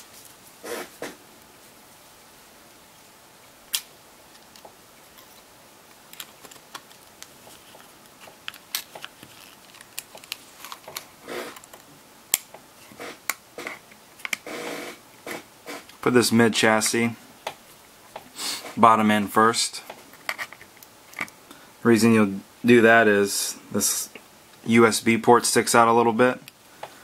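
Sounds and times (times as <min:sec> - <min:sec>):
soft rustle: 0:06.2 - 0:10.9.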